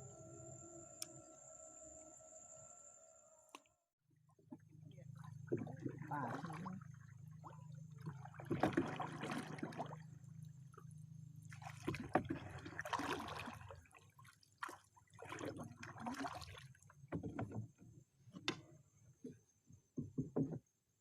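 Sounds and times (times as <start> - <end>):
water sloshing and splashing: 4.2 - 18.8.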